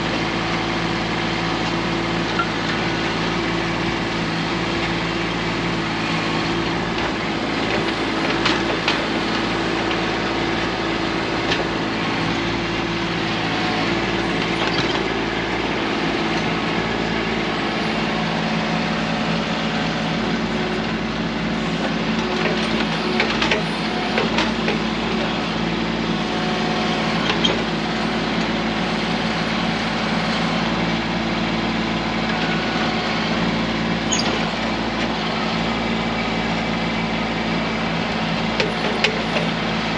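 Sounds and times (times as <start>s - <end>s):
diesel tractor engine running: 0.0s - 39.9s.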